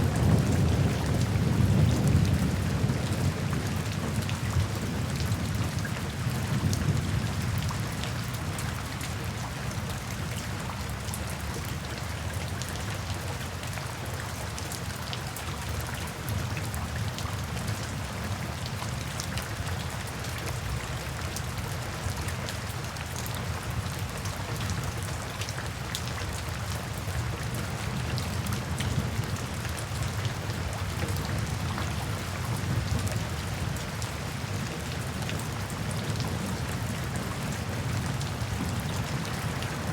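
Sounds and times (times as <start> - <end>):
low rumble of thunder: 0.0 - 8.9
rain drops ticking: 0.0 - 39.9.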